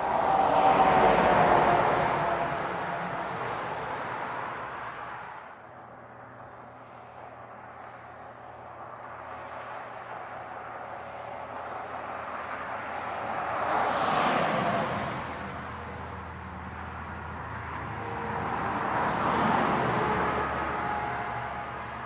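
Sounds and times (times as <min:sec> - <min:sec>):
heavy trucks passing: 0:00.0 - 0:05.6, 0:10.6 - 0:22.0.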